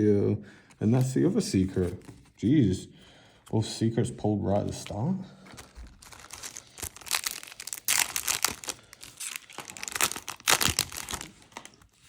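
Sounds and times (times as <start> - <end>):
foil wrapper crinkling and tearing: 5.5 - 12.0.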